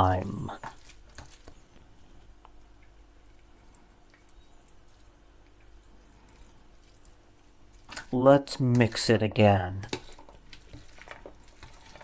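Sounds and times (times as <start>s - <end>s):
low steady hum: 0.0s - 12.0s
juice dripping into a bowl: 0.6s - 8.2s.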